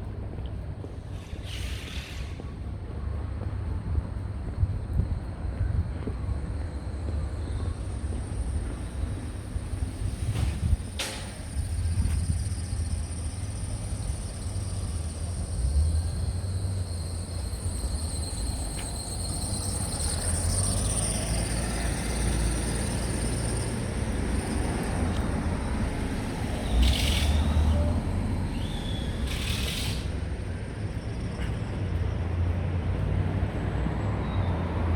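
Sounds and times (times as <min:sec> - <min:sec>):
rumble of passing vehicles: 0:00.0 - 0:34.9
short hisses: 0:01.2 - 0:02.4.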